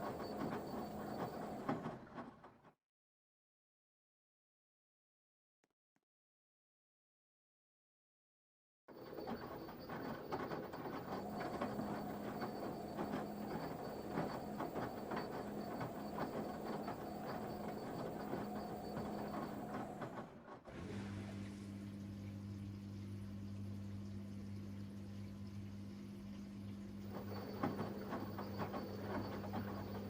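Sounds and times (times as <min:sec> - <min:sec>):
mains hum: 0:00.0 - 0:02.0, 0:08.9 - 0:30.0
washing machine drum clacking: 0:09.7 - 0:20.1, 0:27.0 - 0:30.0
motor whine: 0:09.7 - 0:30.0.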